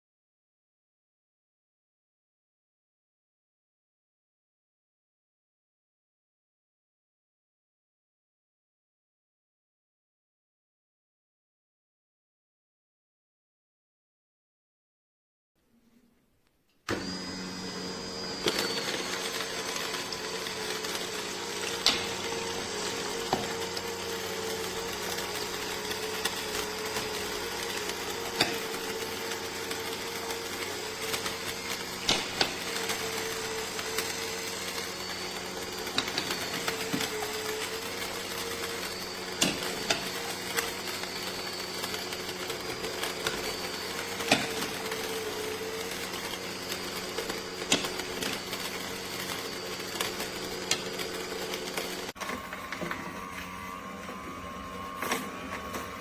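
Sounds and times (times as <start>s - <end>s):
juicer motor hum: 16.9s - 56.0s.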